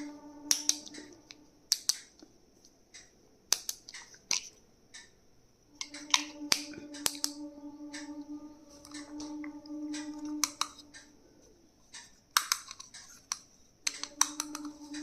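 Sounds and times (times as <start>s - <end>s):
plastic stationery clicking: 0.0s - 2.2s, 3.5s - 4.6s, 5.8s - 7.4s, 10.0s - 11.0s, 11.9s - 15.0s
steady hum: 0.0s - 3.5s, 4.6s - 12.3s, 13.6s - 15.0s.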